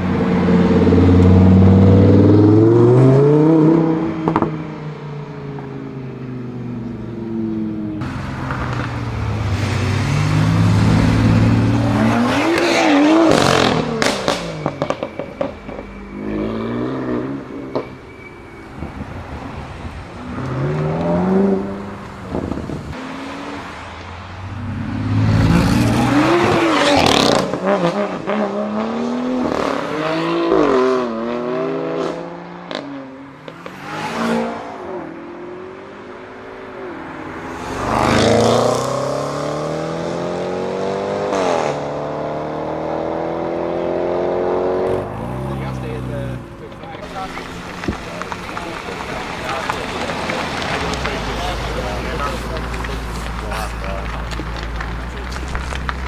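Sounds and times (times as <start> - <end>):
car engine revving: 0.0 - 56.0
exhaust crackles and pops: 46.6 - 56.0.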